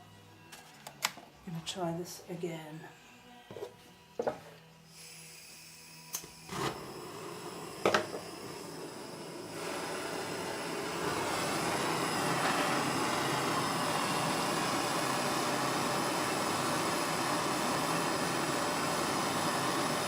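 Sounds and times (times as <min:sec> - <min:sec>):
gas torch hissing: 0:04.8 - 0:20.0.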